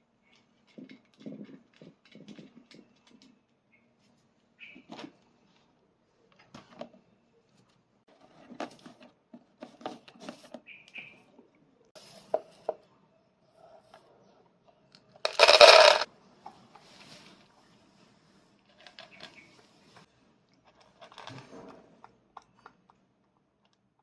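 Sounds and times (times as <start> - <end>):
dry cat food poured into bowl: 15.3 - 16.1.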